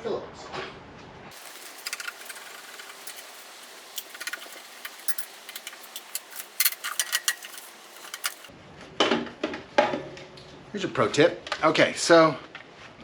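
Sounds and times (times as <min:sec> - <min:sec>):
screwdriver and screws clicking: 0:01.4 - 0:08.5.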